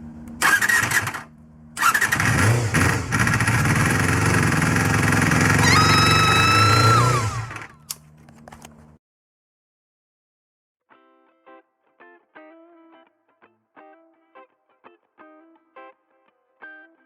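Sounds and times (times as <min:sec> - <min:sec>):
motorcycle engine starting and running: 0:00.0 - 0:09.0.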